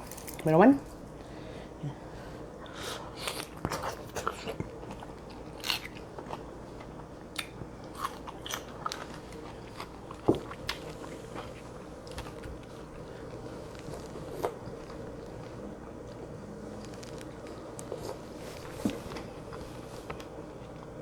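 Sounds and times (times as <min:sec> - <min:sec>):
person chewing crunchy food: 0:02.8 - 0:15.5.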